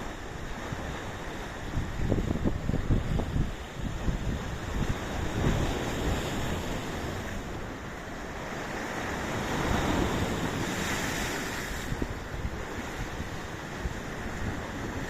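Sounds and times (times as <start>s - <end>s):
sea waves breaking on shore: 0.0s - 15.0s
wind buffeting microphone: 0.2s - 15.0s.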